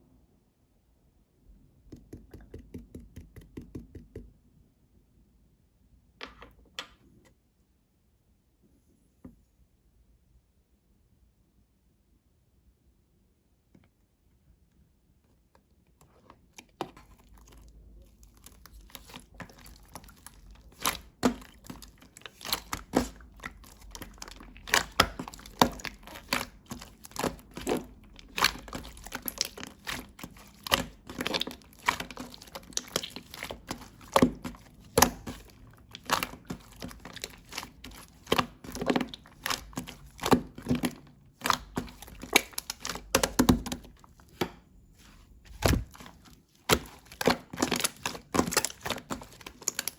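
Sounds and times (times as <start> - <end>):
slime squishing: 16.1 - 49.9
slime popping and crackling: 18.3 - 44.4, 45.5 - 49.9.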